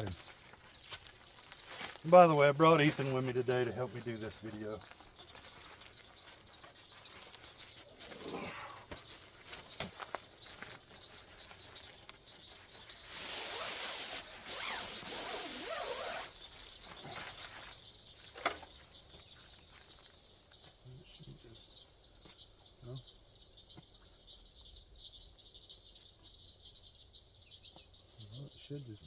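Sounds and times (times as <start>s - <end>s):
tarp packaging rustling: 0.0s - 18.7s.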